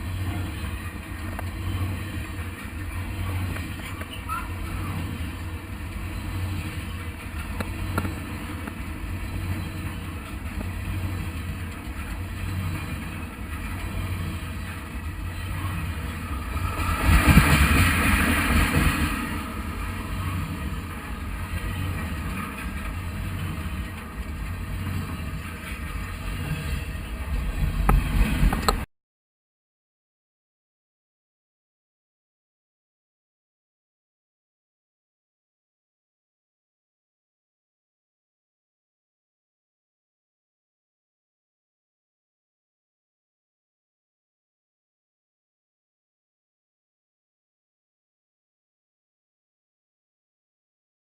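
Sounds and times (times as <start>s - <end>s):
train rumbling on tracks: 0.0s - 28.9s.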